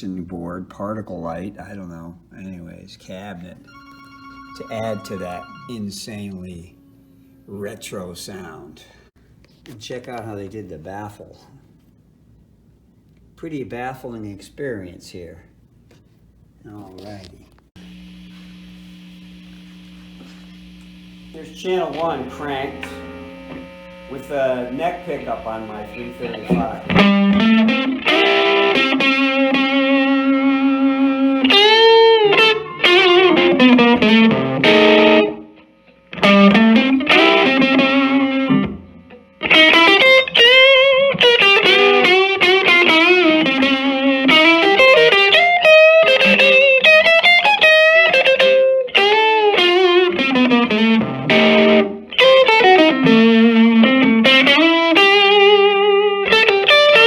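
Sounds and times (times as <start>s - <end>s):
electric guitar with string bends: 3.6s - 8.4s, 17.8s - 57.0s.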